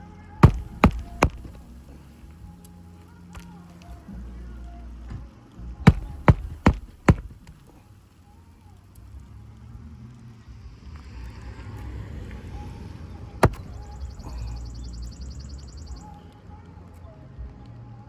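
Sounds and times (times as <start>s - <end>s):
low steady background rumble: 0.0s - 18.0s
sharp knocks: 0.4s - 1.7s, 5.9s - 7.6s, 13.4s - 13.8s.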